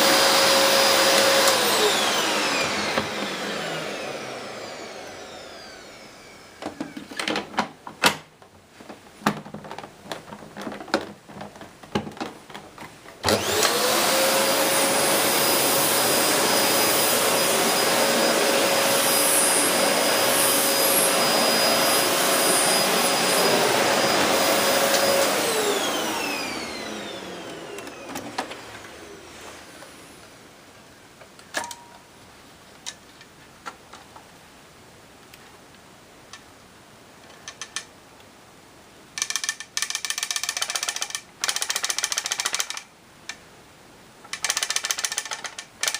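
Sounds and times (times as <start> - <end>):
vacuum cleaner motor whining: 0.0 - 7.4, 13.2 - 30.4.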